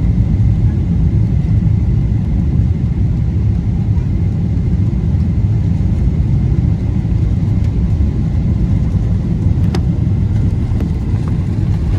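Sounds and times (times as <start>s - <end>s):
engine and airflow rumble: 0.0s - 11.9s.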